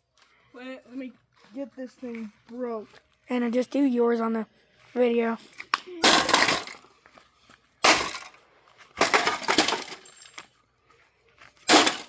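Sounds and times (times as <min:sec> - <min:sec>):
printer being smashed: 0:06.0 - 0:06.8, 0:07.8 - 0:08.3, 0:09.0 - 0:10.1, 0:11.7 - 0:12.0.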